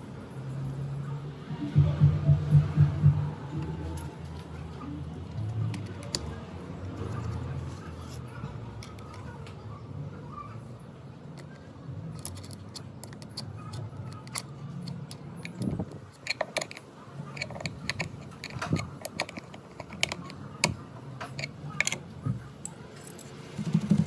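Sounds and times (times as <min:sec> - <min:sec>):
wood pieces clicking: 0:12.2 - 0:16.8, 0:17.4 - 0:22.0.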